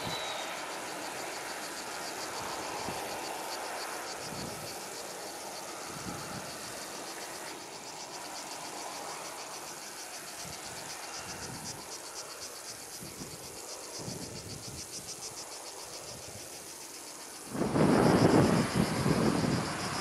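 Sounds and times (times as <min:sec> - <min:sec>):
insects chirping: 0:00.0 - 0:20.0.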